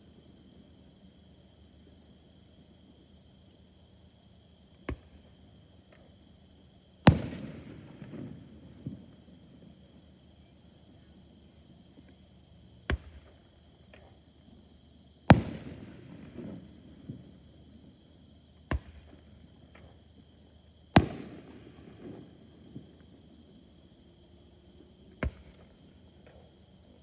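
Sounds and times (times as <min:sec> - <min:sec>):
fireworks bursting with bangs: 0:07.1 - 0:09.3, 0:15.3 - 0:17.4, 0:20.9 - 0:23.2.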